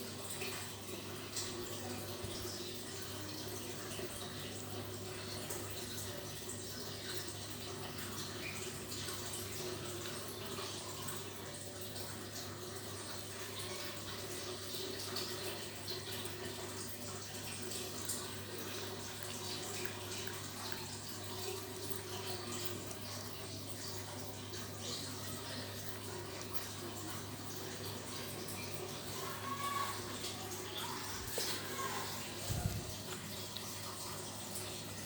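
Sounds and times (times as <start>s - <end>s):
cat licking: 17.6s - 24.0s.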